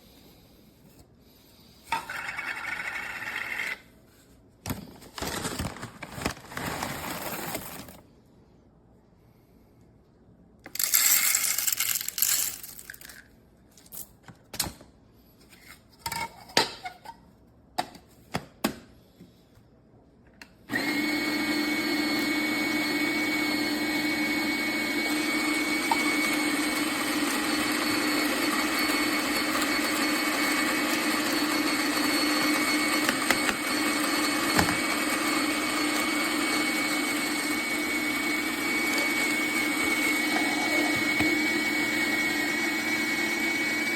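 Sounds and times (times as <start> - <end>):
coffee grinder motor whining: 20.7 - 43.9.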